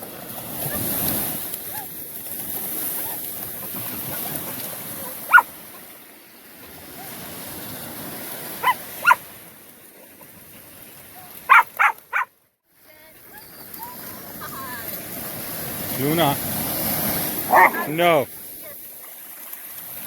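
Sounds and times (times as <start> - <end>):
dog barking: 5.0 - 5.5, 8.6 - 9.2, 11.5 - 12.3, 17.4 - 18.0.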